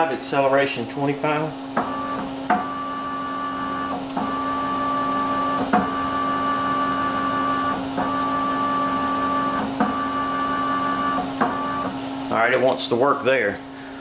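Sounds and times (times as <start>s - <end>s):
stepper motor whining: 1.8s - 12.0s.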